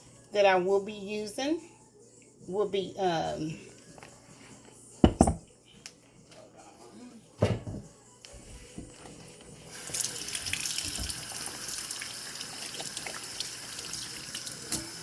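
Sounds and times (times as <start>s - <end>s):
faucet water running into sink: 9.7s - 15.0s.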